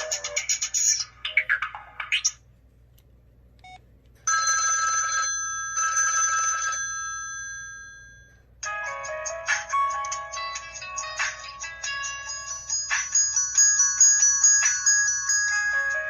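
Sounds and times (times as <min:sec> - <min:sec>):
melodic ringtone: 0:00.0 - 0:02.2, 0:04.3 - 0:16.0
telephone bell ringtone: 0:04.3 - 0:09.1, 0:09.9 - 0:16.0.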